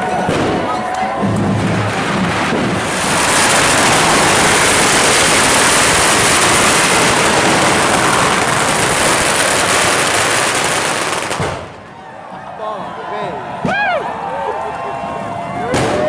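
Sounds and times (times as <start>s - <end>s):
fireworks hissing and crackling: 0.0s - 11.9s.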